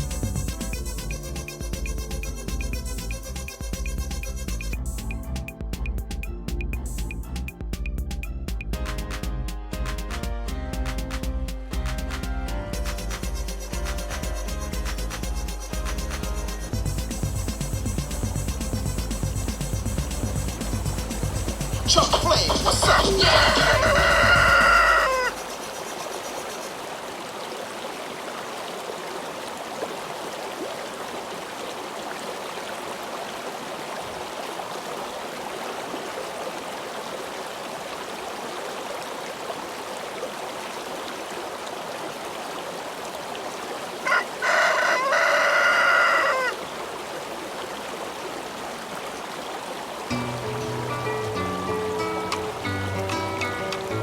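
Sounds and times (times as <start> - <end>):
background hiss: 11.0 - 29.2, 39.6 - 54.0
rooster crowing: 21.9 - 25.6, 44.0 - 46.7.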